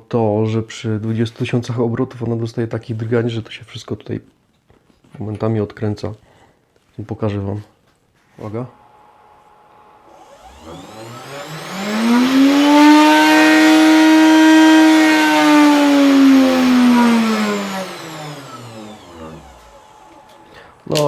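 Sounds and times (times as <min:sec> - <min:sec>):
router spindle whine: 0:08.6 - 0:21.0.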